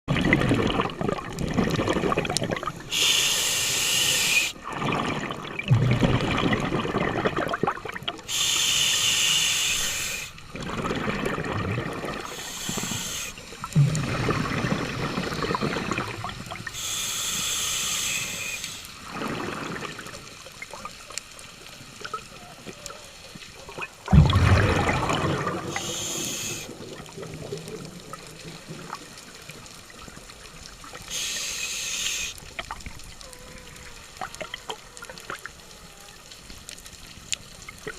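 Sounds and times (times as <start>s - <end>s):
exhaled bubbles: 0.1s - 3.1s, 4.2s - 8.4s, 10.4s - 16.9s, 19.0s - 21.0s, 23.6s - 31.2s
hissing regulator inhalations: 2.8s - 4.6s, 8.2s - 10.4s, 12.2s - 13.8s, 14.8s - 19.0s, 25.6s - 26.8s, 31.0s - 32.4s.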